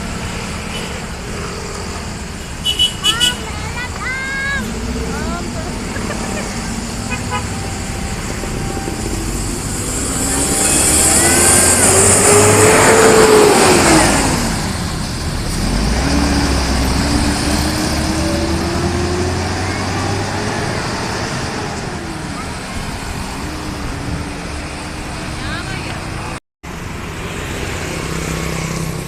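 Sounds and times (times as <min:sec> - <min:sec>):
large vehicle engine passing: 0:03.7 - 0:29.0
engine pulling away: 0:04.2 - 0:25.8.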